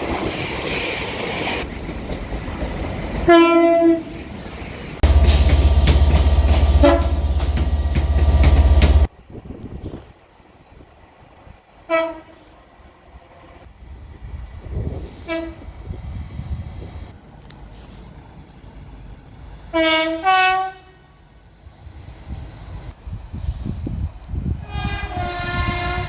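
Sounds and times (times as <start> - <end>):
train rumble: 0.0 - 10.1
train horn blasts: 3.3 - 4.1, 5.0 - 9.1, 11.9 - 12.5, 15.2 - 15.7, 19.8 - 20.9, 24.6 - 26.0
high whine: 5.0 - 9.1.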